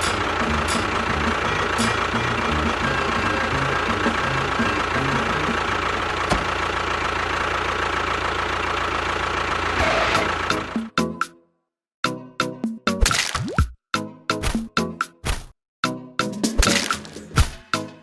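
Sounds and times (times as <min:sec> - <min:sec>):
motor running with high whine: 0:00.0 - 0:06.6.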